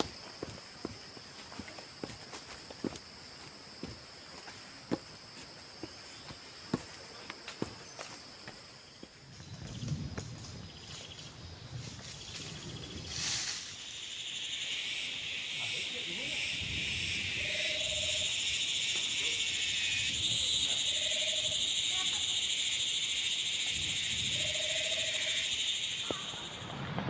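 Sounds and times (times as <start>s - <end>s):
footsteps on trail: 0.0s - 12.3s
insects trilling: 0.0s - 27.0s
low buzzing insect chorus: 0.0s - 27.0s.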